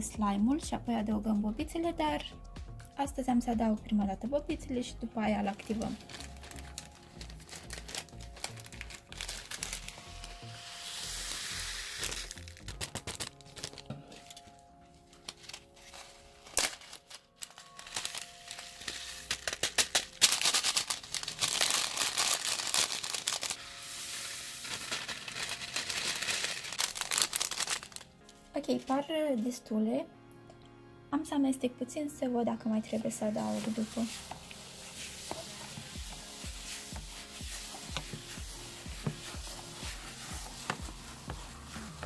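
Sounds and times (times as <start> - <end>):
background music: 0.0 - 42.0
plastic crinkling: 5.4 - 10.4, 11.1 - 28.9, 33.4 - 42.0
foam beads pouring: 5.4 - 14.4, 15.3 - 28.0, 33.4 - 42.0.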